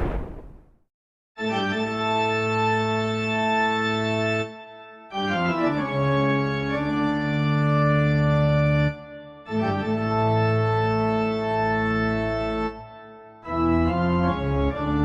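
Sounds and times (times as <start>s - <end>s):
organ tone sliding down: 13.4s - 15.0s.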